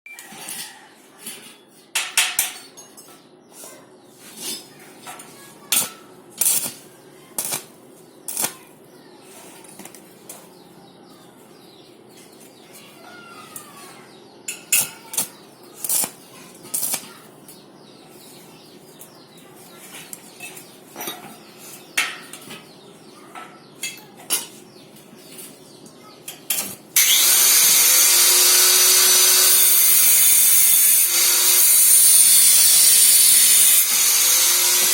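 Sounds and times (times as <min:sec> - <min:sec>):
welding arc crackling hiss: 0:05.8 - 0:06.8, 0:07.4 - 0:07.7, 0:08.3 - 0:08.6, 0:15.1 - 0:17.0, 0:27.0 - 0:34.9.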